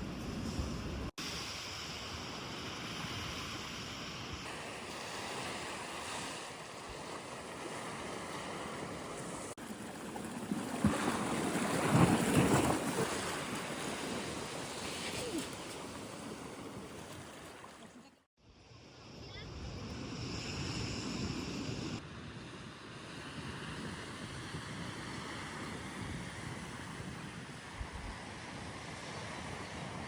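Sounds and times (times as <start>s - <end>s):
sea waves washing ashore: 0.0s - 18.2s, 19.1s - 30.0s
wind buffeting microphone: 23.2s - 30.0s.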